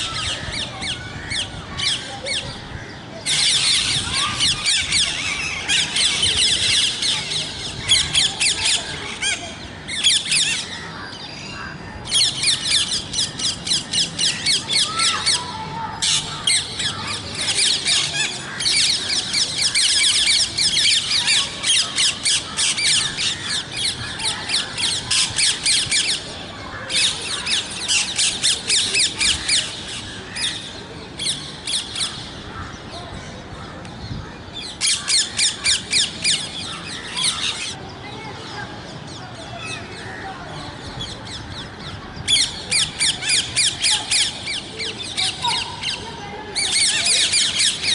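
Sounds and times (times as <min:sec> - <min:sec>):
parrots squawking: 0:16.0 - 0:26.2, 0:34.8 - 0:37.8, 0:46.6 - 0:47.9.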